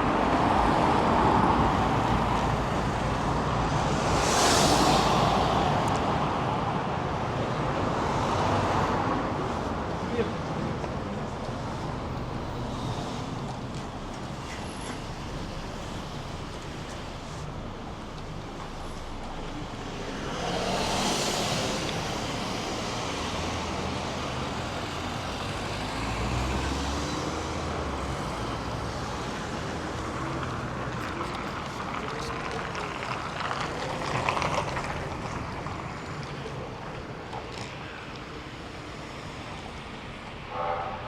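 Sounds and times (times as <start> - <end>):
car and tyre noise: 0.0 - 41.0
low engine rumble: 10.0 - 24.8.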